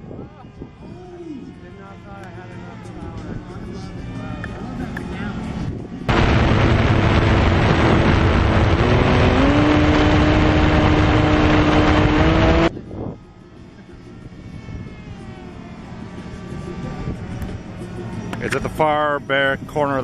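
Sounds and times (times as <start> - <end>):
wind rushing over microphone: 5.6 - 13.4
electric motor whine: 6.1 - 12.7.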